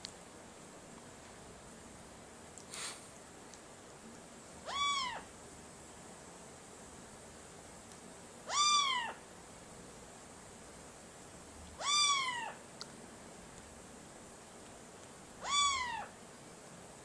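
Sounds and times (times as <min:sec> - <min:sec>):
cat meowing: 0:04.6 - 0:05.3, 0:08.5 - 0:09.2, 0:11.8 - 0:12.6, 0:15.4 - 0:16.2.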